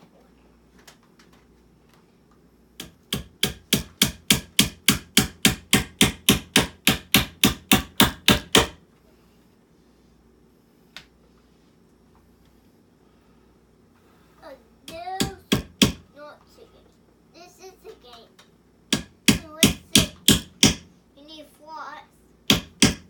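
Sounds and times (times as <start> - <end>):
hammer driving nail into wood: 2.8 - 8.8, 14.9 - 16.0, 18.9 - 20.9, 22.5 - 23.0.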